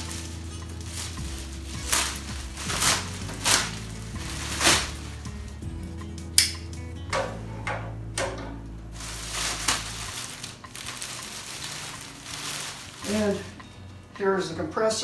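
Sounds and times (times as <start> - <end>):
cardboard packaging handled: 0.0 - 5.6, 8.9 - 13.6
steady low hum: 0.0 - 14.2.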